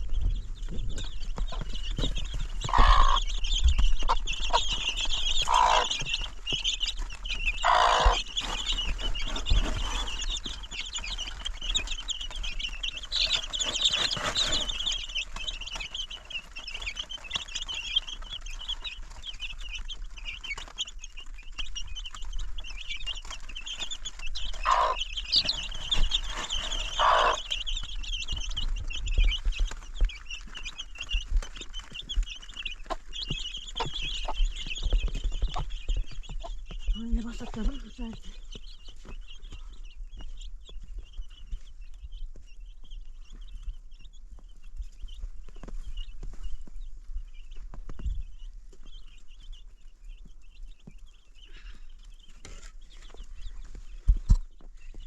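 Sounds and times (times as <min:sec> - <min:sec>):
louder lower bird calls: 0:00.0 - 0:19.8, 0:22.5 - 0:29.7
birds chirping: 0:00.0 - 0:55.0.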